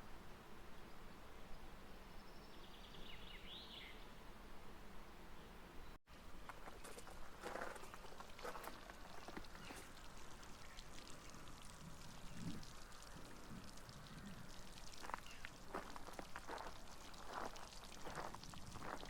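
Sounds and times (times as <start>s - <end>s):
footsteps on gravel: 6.4s - 10.0s, 14.8s - 19.0s.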